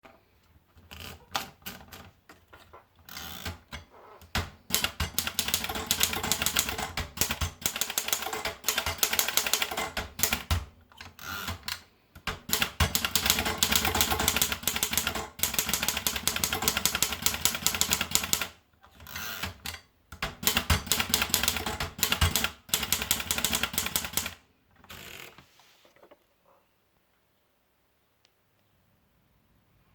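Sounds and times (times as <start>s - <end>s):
typewriter key strikes: 19.4s - 24.4s.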